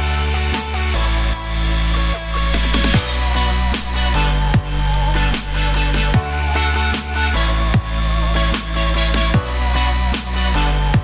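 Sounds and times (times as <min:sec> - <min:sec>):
electronic dance music: 0:02.4 - 0:08.3.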